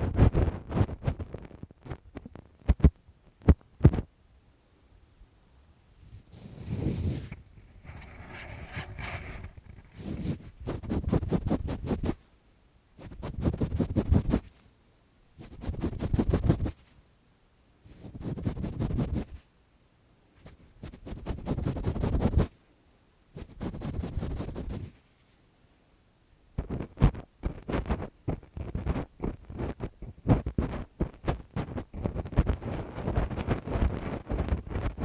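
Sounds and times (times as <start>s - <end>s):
fingers scratching a microphone: 0.0s - 4.1s, 6.0s - 12.2s, 13.0s - 14.6s, 15.4s - 16.9s, 17.9s - 19.4s, 20.4s - 22.5s, 23.4s - 25.0s, 26.6s - 35.0s.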